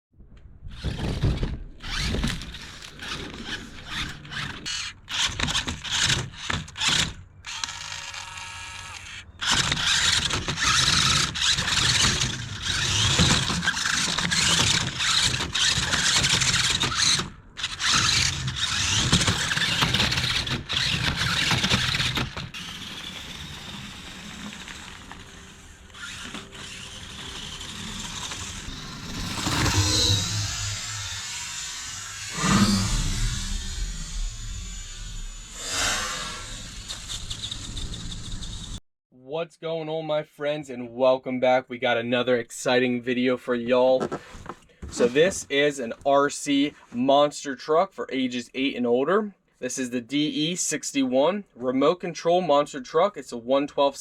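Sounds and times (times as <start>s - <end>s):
toy truck motor whirring: 0.7s - 38.8s
toy truck knocking and clattering: 0.8s - 8.0s, 9.4s - 28.6s.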